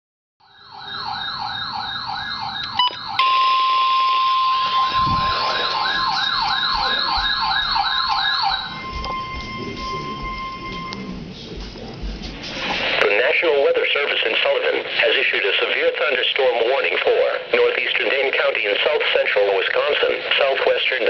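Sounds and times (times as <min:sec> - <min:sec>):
electronic siren wailing: 0:00.4 - 0:11.4
steady alarm tone: 0:00.4 - 0:13.0.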